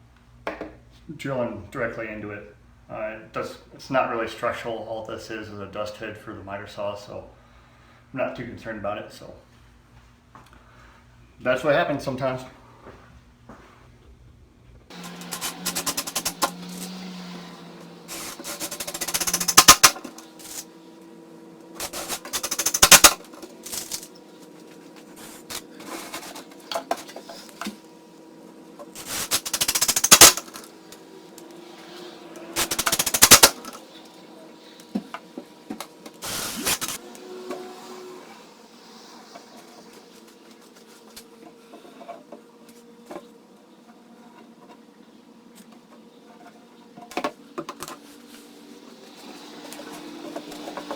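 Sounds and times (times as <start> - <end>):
power screwdriver driving screws: 14.9 - 17.1, 18.1 - 20.6, 21.8 - 24.1, 29.0 - 30.7, 32.6 - 33.8, 36.2 - 37.1.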